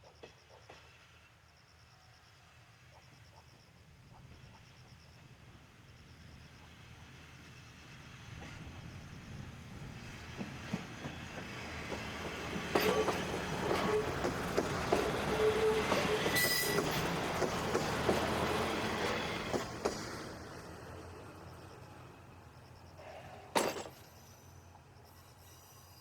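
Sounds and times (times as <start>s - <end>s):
diesel railcar engine droning: 5.2s - 26.0s
train wheels clicking over rail joints: 8.3s - 22.1s, 23.0s - 25.7s
high wheel squeals: 11.0s - 20.2s, 23.0s - 26.0s.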